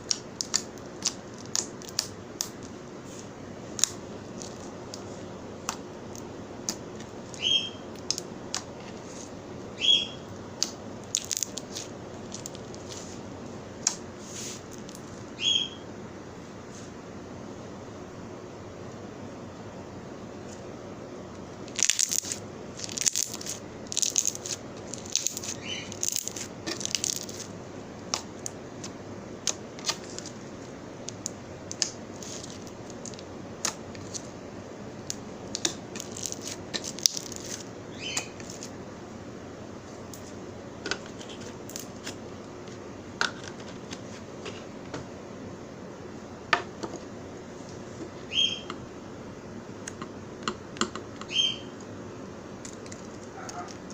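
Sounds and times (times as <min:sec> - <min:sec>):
slime popping and crackling: 0:00.0 - 0:02.7, 0:10.6 - 0:13.0, 0:21.6 - 0:30.4, 0:31.1 - 0:34.3, 0:35.0 - 0:38.7.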